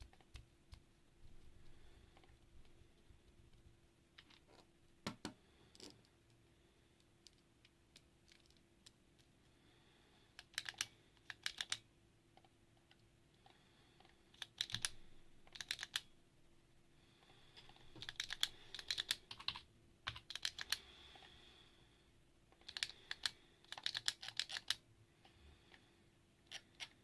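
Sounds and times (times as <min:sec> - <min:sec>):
mechanical keyboard key clicks: 0:10.4 - 0:11.8, 0:14.4 - 0:16.0, 0:18.0 - 0:20.8, 0:22.7 - 0:24.8.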